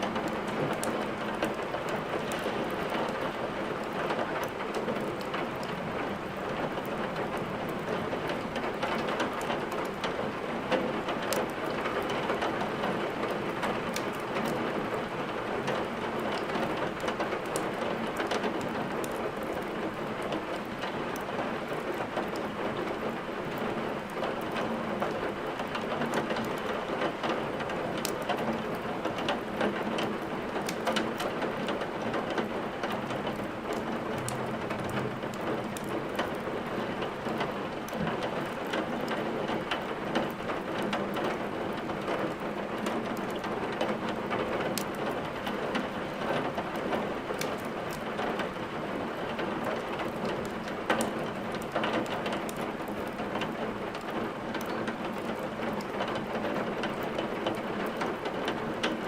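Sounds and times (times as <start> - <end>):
steady rain: 0.0 - 59.0
firewood crackling: 46.7 - 48.1.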